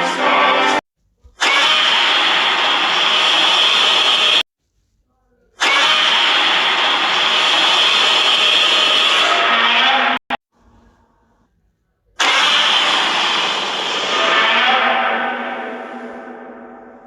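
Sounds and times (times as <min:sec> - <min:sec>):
rasping monster roar: 0:05.6 - 0:10.2, 0:12.2 - 0:16.7.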